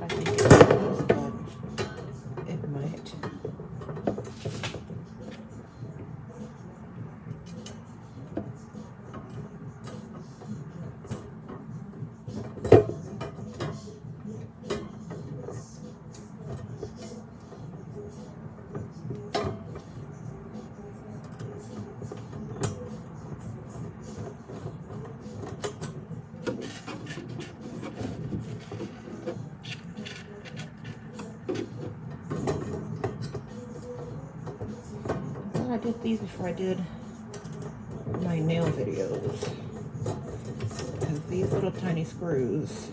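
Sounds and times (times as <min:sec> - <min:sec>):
metal parts clicking and scraping: 0:25.6 - 0:32.8
screws being screwed in: 0:26.6 - 0:31.9.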